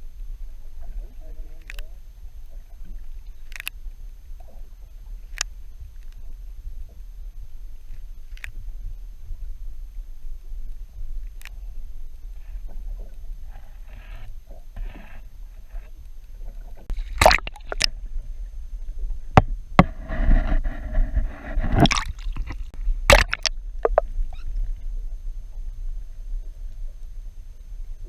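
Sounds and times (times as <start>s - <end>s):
steady low rumble: 0.0s - 28.0s
water sloshing and gurgling: 10.6s - 27.6s.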